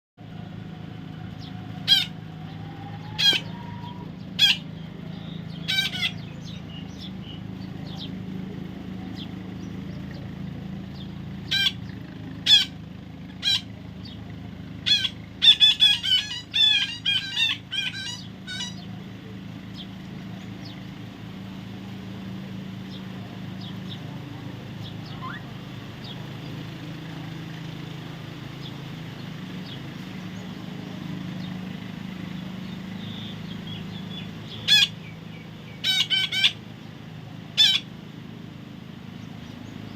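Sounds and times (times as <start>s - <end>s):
steady low hum: 0.2s - 39.9s
parrot screeching calls: 1.4s - 4.7s, 5.6s - 6.6s, 11.5s - 13.7s, 14.8s - 18.9s, 25.1s - 25.5s, 34.6s - 35.1s, 35.7s - 36.6s, 37.6s - 37.9s.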